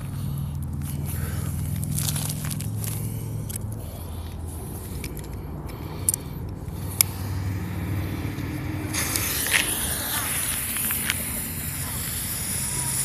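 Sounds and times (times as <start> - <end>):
low hum: 0.0 - 13.0
spinner firework hissing: 6.8 - 13.0.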